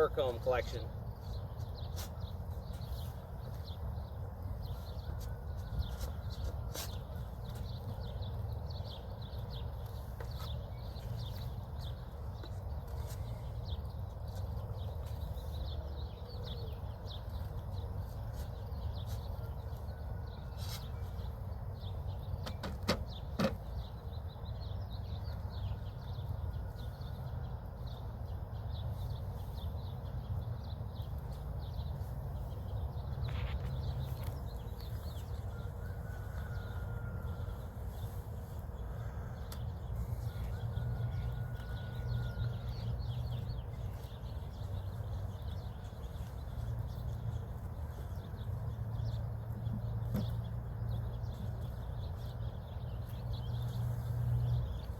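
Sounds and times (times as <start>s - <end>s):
birds chirping: 0.0s - 54.9s
honeybees humming: 23.9s - 54.9s.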